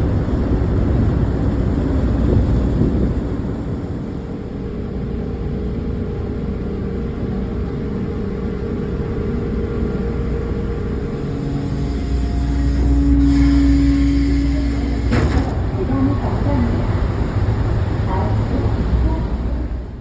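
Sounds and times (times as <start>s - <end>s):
engine rumble and hum: 0.0s - 20.0s
loud steady tone: 5.0s - 20.0s.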